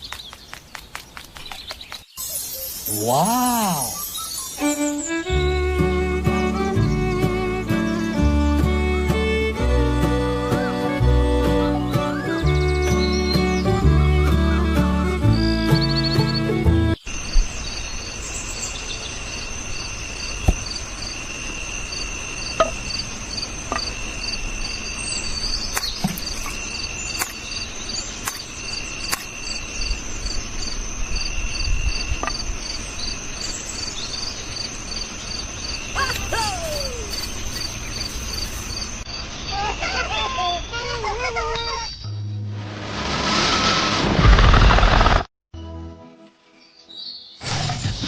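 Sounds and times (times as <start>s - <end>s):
crickets chirping: 2.1s - 5.3s, 17.0s - 42.1s.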